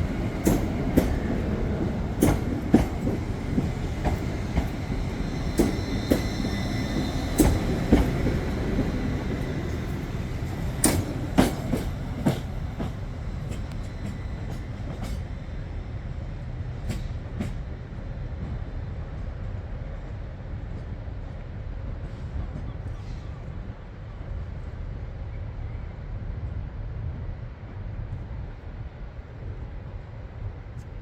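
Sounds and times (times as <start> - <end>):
wheels clicking over rail joints: 0.0 - 15.3
train rumbling on rails: 0.0 - 31.0.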